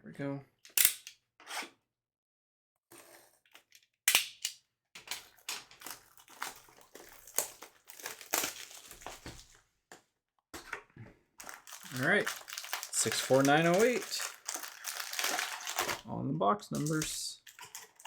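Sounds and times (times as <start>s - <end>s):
plastic wrapping crinkling: 5.0s - 9.6s, 11.4s - 16.0s, 16.8s - 18.0s.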